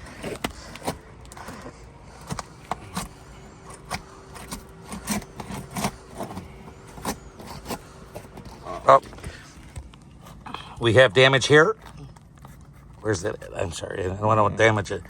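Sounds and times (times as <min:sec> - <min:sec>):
shingles being pried up: 0:00.0 - 0:09.8
faint steady hum: 0:00.0 - 0:15.0.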